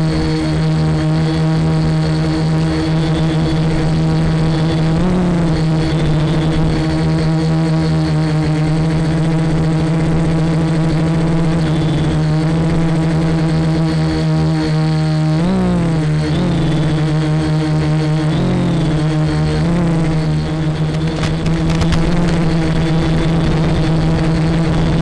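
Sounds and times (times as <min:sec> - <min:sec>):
drone motors and propellers humming: 0:00.0 - 0:25.0.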